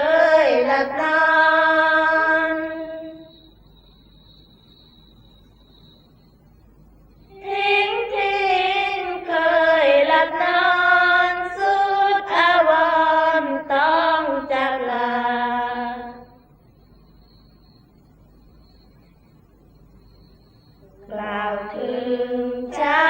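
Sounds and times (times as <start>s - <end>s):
woman singing chant: 0.0s - 3.4s, 7.3s - 16.5s, 20.8s - 23.0s.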